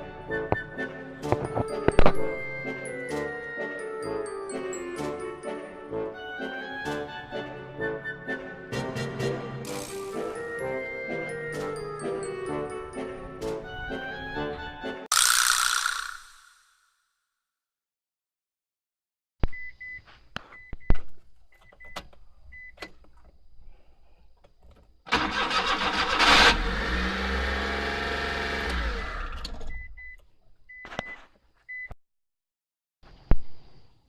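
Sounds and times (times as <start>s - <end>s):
van engine cranking and running: 25.1s - 30.0s.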